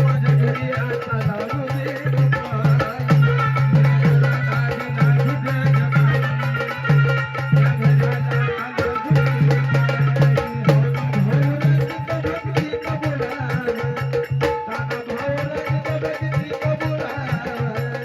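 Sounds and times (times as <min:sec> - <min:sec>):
hand drum fast rhythm: 0:00.0 - 0:18.0.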